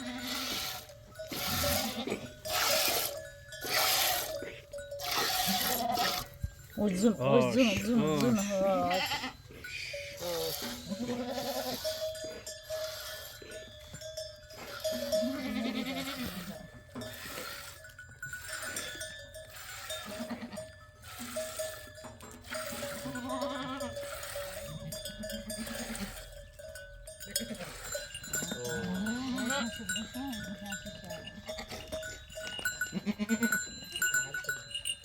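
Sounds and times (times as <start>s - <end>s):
animals bleating: 0.0s - 12.0s, 14.8s - 17.6s, 20.0s - 21.4s, 22.5s - 26.3s, 27.2s - 31.9s, 32.6s - 34.4s
livestock bells ringing: 0.8s - 35.0s.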